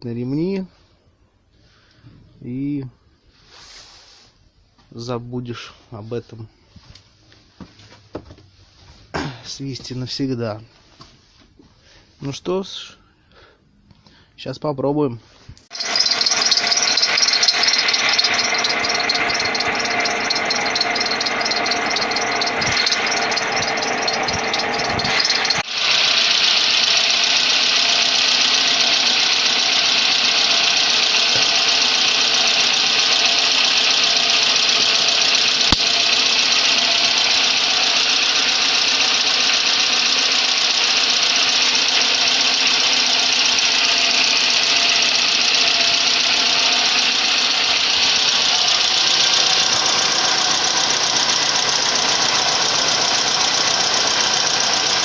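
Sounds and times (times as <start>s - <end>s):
car engine idling: 15.7s - 55.0s
drive belts squealing: 15.7s - 55.0s.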